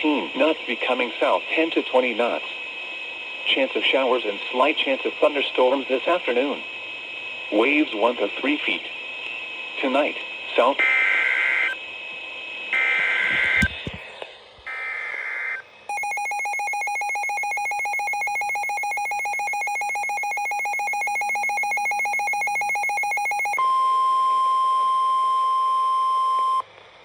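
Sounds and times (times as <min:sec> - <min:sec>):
steady alarm tone: 0:12.8 - 0:14.0, 0:15.9 - 0:23.6.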